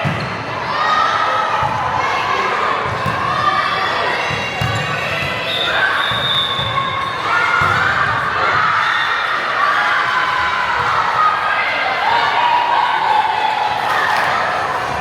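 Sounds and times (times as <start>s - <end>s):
spectators shouting and cheering: 0.0s - 15.0s
referee's whistle: 5.4s - 6.8s.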